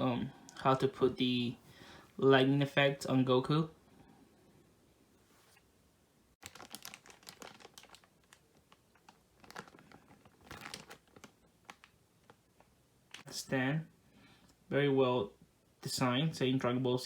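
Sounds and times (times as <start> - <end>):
packaging crinkling: 6.4 - 13.3.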